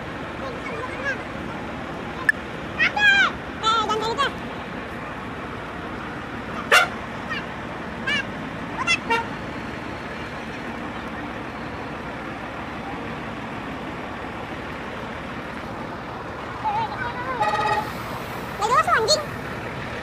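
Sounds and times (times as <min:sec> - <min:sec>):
road traffic noise: 0:00.0 - 0:20.0
warbling musical horn toots: 0:17.3 - 0:18.0.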